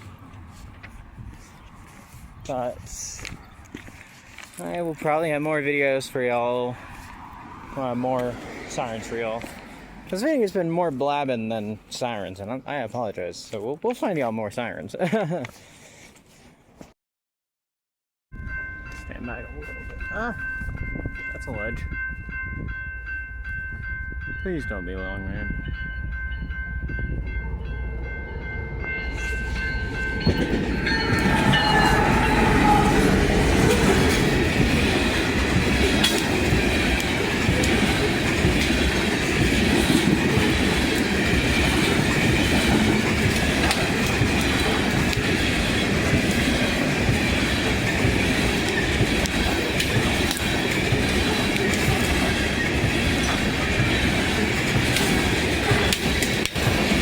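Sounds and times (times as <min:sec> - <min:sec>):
train wheels rumbling on rails: 0:00.0 - 0:12.4, 0:23.5 - 0:57.0
train horn chord: 0:27.4 - 0:34.6.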